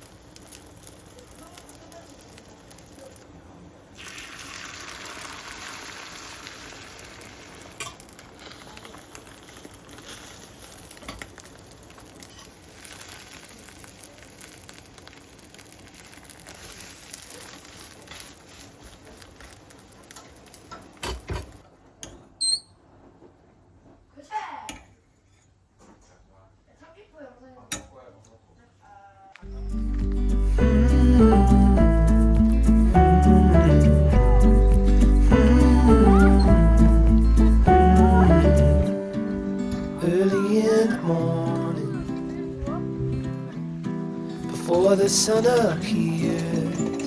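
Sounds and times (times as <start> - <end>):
food sizzling in a frying pan: 0.0 - 21.6
short high beep: 22.4 - 22.7.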